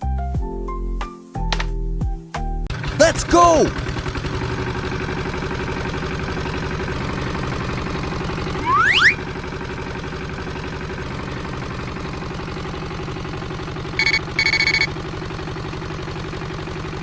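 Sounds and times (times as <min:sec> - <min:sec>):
truck engine droning: 0:02.7 - 0:17.0
horn beeps: 0:08.6 - 0:09.2, 0:14.0 - 0:14.9
rising whistle: 0:08.6 - 0:09.3, 0:14.0 - 0:14.9.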